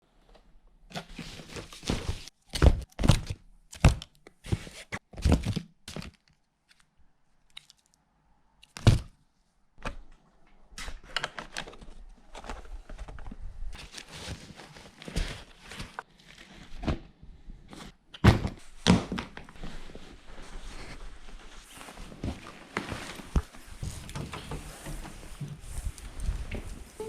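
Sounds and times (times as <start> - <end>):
rustling and scraping handling: 10.9 - 17.0, 19.4 - 27.0.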